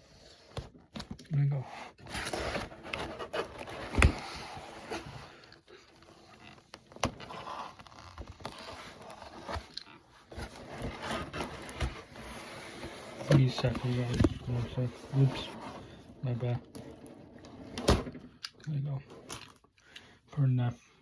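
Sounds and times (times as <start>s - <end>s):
cardboard and tape scraping: 1.6s - 18.0s.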